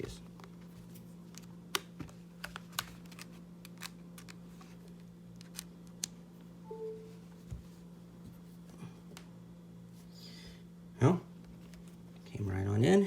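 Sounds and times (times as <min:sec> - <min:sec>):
steady low hum: 0:00.0 - 0:13.0
short tone: 0:06.6 - 0:07.4.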